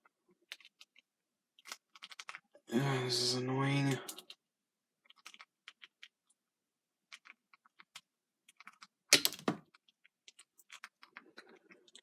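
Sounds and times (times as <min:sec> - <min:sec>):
plastic action figure clicks: 0:09.2 - 0:09.6.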